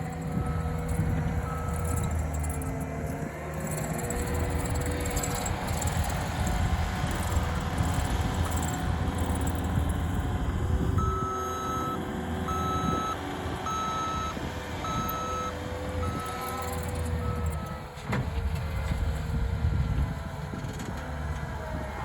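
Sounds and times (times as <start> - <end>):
diesel heavy equipment running: 0.0 - 22.0
reversing alarm beeping: 0.2 - 2.9, 11.0 - 17.9.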